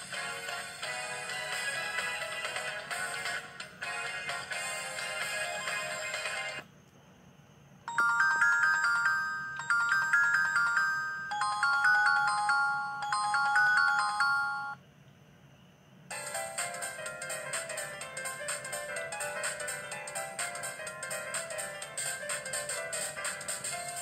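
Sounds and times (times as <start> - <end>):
busier phone ringtone: 7.9 - 14.8
chiming phone ringtone: 7.9 - 14.8.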